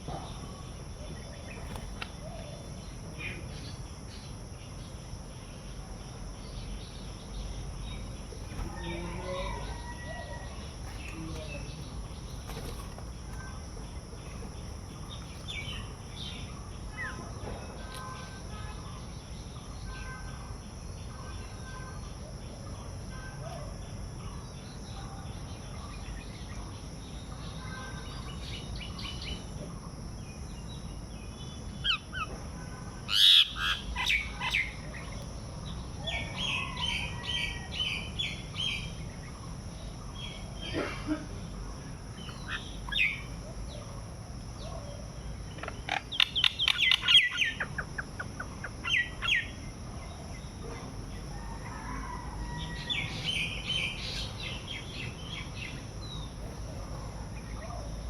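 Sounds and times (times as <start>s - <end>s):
small birds chirping: 0.0s - 21.9s, 41.5s - 58.0s.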